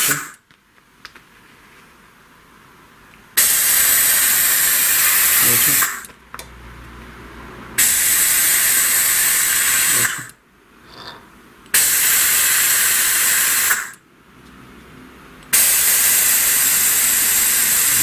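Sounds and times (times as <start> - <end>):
compressed air hissing: 7.8 - 10.3, 11.8 - 14.0, 15.5 - 18.0.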